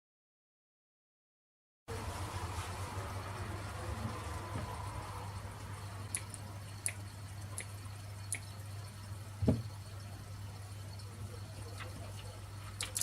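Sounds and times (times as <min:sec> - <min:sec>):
steady low hum: 0:01.9 - 0:13.0
dull thump: 0:09.4 - 0:09.7.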